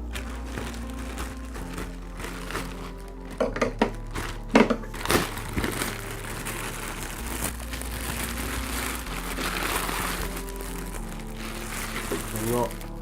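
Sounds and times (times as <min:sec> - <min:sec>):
box packaging crackling and rustling: 0:00.0 - 0:13.0.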